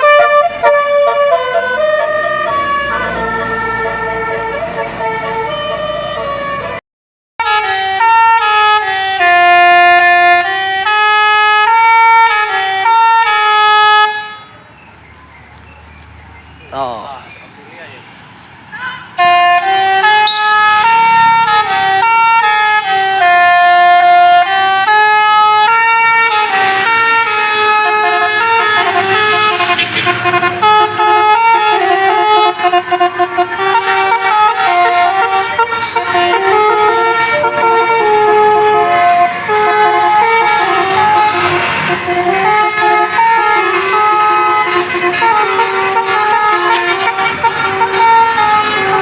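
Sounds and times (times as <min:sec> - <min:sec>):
musical bus horn playing a tune: 0:00.0 - 0:06.8, 0:07.4 - 0:14.6, 0:19.2 - 0:49.0.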